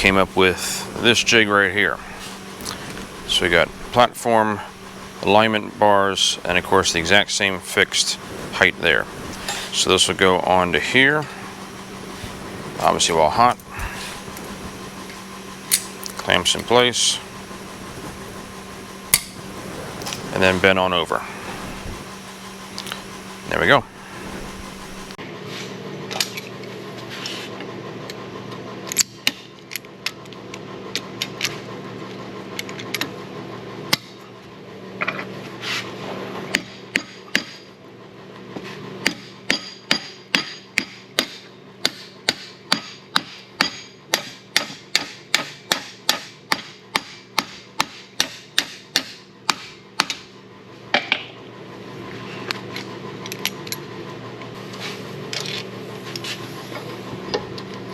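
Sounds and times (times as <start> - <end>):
fan humming: 0.0 - 25.2, 50.0 - 57.9
hammer striking steel on anvil: 39.1 - 50.2.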